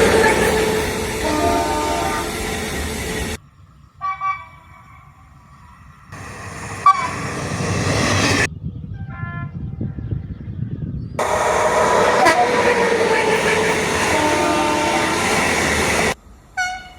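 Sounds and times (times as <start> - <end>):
train horn toots: 0.0 - 3.2, 6.2 - 7.4, 11.2 - 16.9
train rumbling past: 0.0 - 3.9, 4.6 - 8.5, 11.2 - 16.9.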